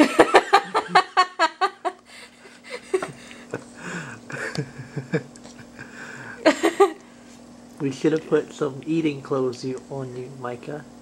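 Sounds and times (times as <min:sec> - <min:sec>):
laughter: 0:00.0 - 0:02.0, 0:02.7 - 0:03.6, 0:04.3 - 0:07.0
faint steady hum: 0:00.0 - 0:11.0.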